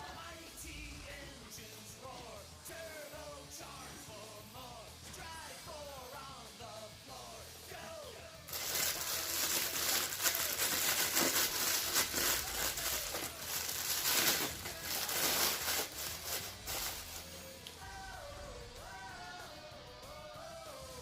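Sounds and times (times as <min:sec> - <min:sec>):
plastic packaging crinkling: 0:08.5 - 0:17.4.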